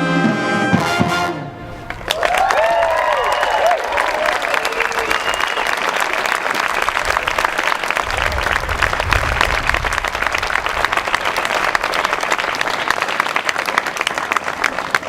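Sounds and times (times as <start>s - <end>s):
low rumble: 1.4s - 12.8s
audience applauding: 1.6s - 15.0s.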